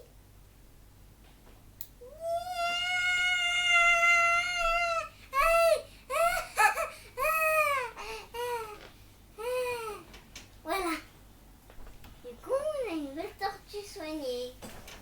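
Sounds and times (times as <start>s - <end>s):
child wailing: 2.0s - 8.8s, 9.4s - 10.1s.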